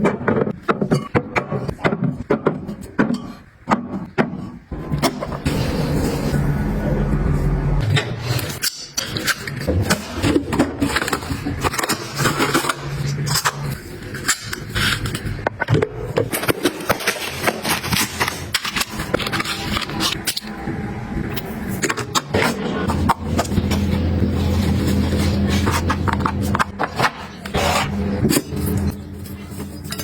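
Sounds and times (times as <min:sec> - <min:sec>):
low hum: 0:04.7 - 0:08.6.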